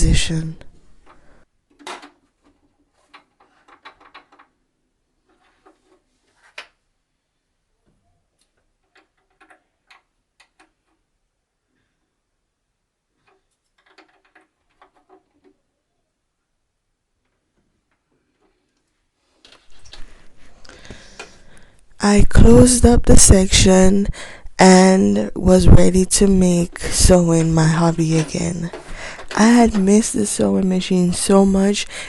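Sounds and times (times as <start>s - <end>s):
small parts clicking and tapping: 1.0s - 4.6s, 8.4s - 11.1s, 13.2s - 15.6s.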